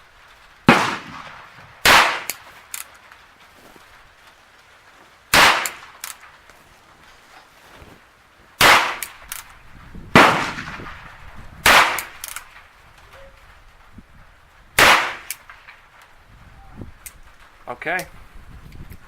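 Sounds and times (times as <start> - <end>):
faint clicks: 2.3 - 6.6, 12.0 - 14.0, 17.0 - 19.0.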